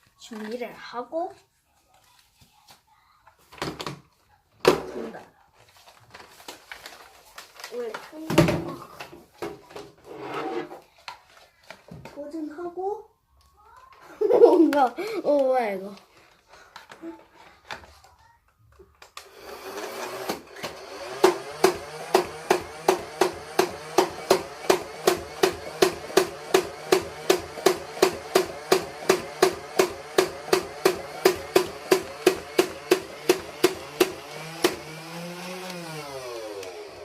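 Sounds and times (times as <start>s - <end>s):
flywheel motor whine: 19.2s - 37.0s.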